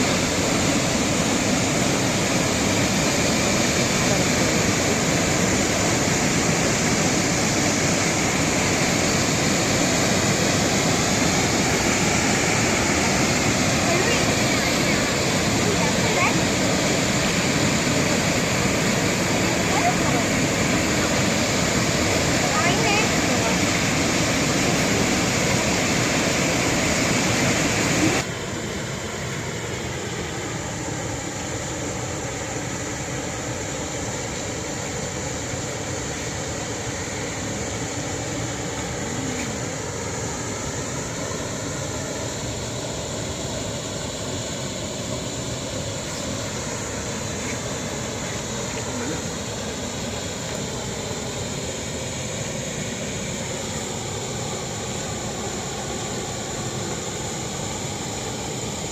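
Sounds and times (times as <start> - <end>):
waterfall rushing: 0.0 - 58.9.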